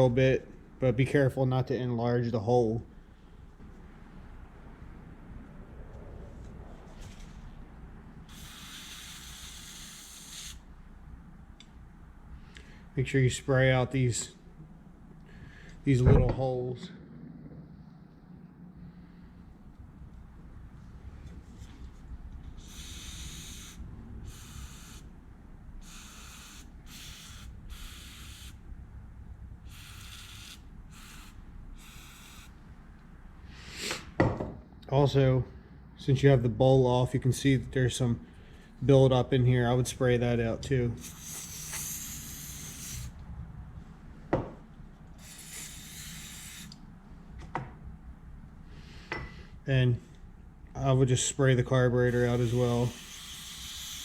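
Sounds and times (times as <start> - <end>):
aerosol spray hissing bursts: 8.3 - 10.7, 22.6 - 25.1, 25.8 - 28.6, 29.7 - 32.6, 41.0 - 43.2, 45.2 - 46.8, 52.1 - 54.0.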